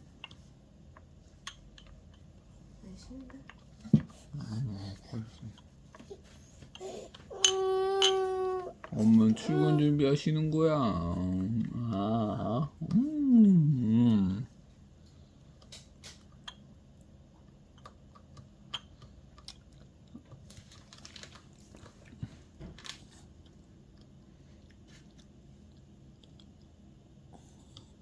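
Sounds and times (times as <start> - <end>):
baby chewing wet smacks: 21.4 - 26.8.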